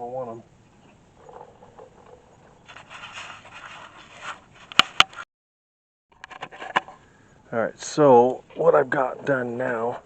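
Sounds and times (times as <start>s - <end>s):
scraping and handling noise: 1.2s - 5.2s, 6.2s - 7.0s.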